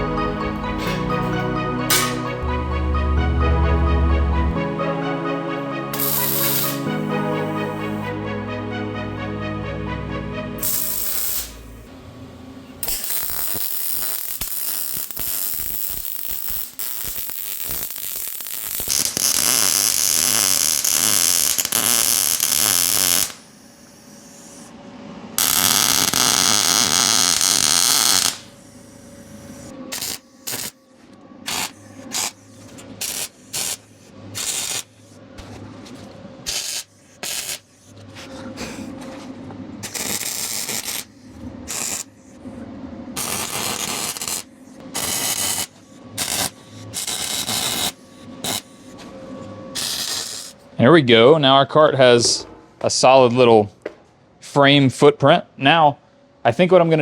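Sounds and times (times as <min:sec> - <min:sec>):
welder arcing with crackling hiss: 0:06.0 - 0:08.1, 0:10.6 - 0:11.9, 0:12.8 - 0:24.7, 0:25.4 - 0:28.6, 0:29.3 - 0:30.8, 0:31.4 - 0:35.6, 0:36.4 - 0:37.7, 0:39.8 - 0:41.1, 0:41.7 - 0:42.1, 0:43.2 - 0:48.9, 0:49.7 - 0:50.6.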